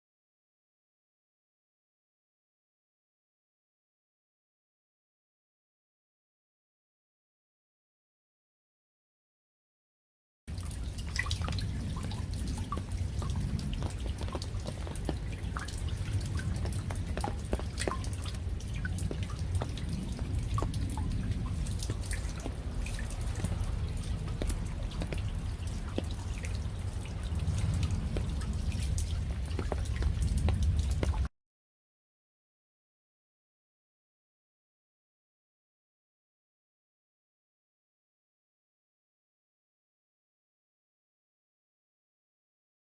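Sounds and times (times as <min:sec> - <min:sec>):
raindrops tapping: 0:10.5 - 0:31.3
steady low rumble: 0:10.5 - 0:31.3.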